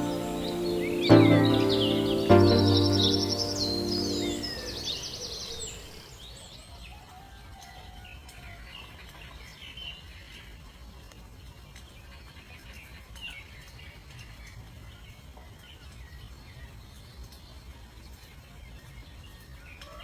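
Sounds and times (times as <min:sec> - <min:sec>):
background music: 0:00.0 - 0:05.3
high bird chirps: 0:00.0 - 0:05.9.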